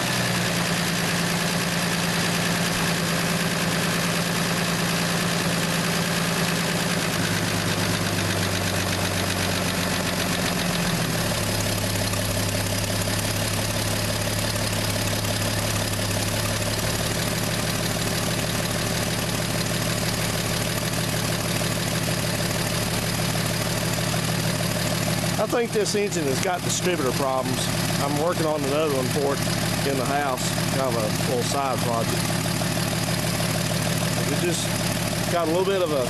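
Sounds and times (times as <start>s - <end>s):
car engine idling: 0.0s - 36.0s.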